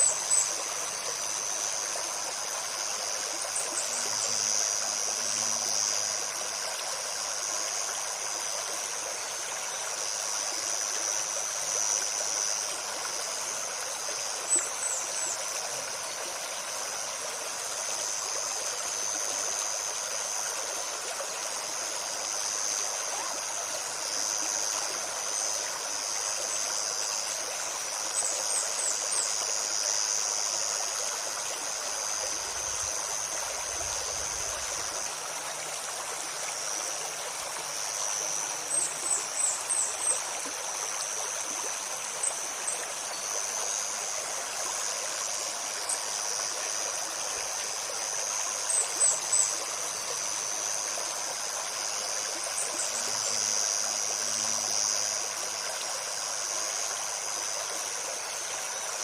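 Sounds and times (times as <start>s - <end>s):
high insect buzz: 0.0s - 59.0s
river babbling over stones: 0.0s - 59.0s.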